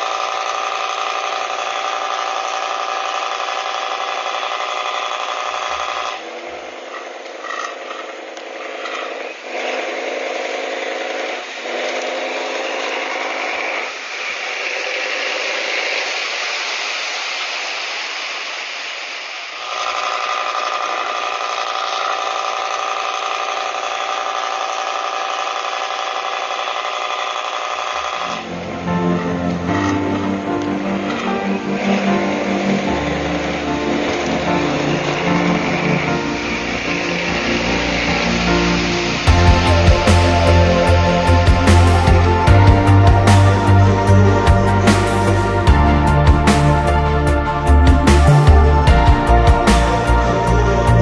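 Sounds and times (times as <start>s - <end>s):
toy steam boat puttering: 0.0s - 28.6s.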